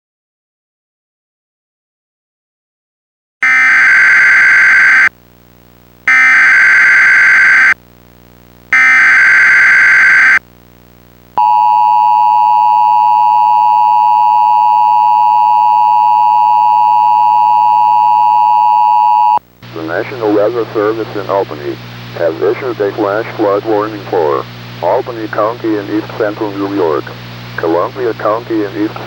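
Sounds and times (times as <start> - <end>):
data tone bursts: 3.4 - 5.1, 6.1 - 7.8, 8.8 - 10.4, 11.4 - 19.4.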